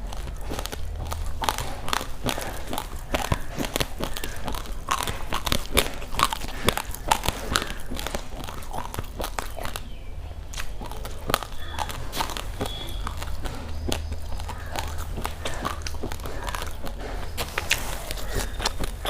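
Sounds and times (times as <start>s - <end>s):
chewing crunchy rice grains: 0.0s - 19.0s.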